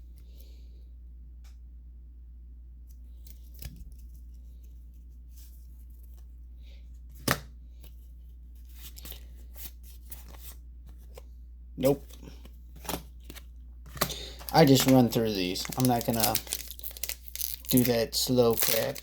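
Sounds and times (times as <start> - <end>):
trading cards clicking and rustling: 11.8 - 19.0.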